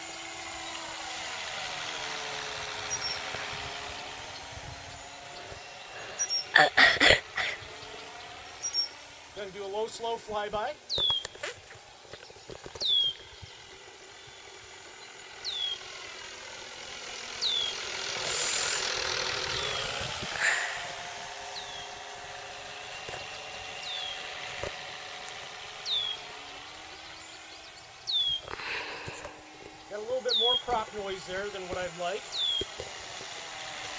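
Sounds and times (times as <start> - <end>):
model plane engine and propeller: 0.0 - 33.9
bird chirping: 2.8 - 3.3, 4.2 - 6.6, 7.5 - 9.1, 10.8 - 11.5, 12.1 - 15.9, 17.4 - 17.9, 21.5 - 22.0, 23.2 - 24.4, 25.8 - 32.8.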